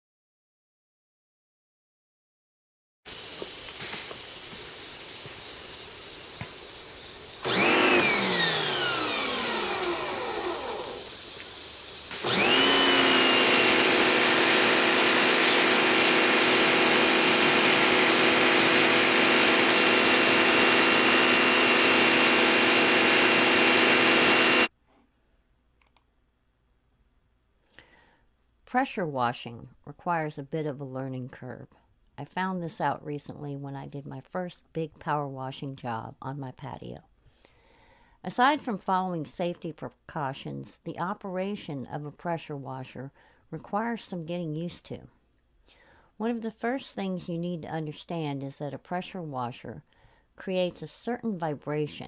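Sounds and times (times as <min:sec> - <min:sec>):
pressure washer motor whine: 0:03.1 - 0:24.7.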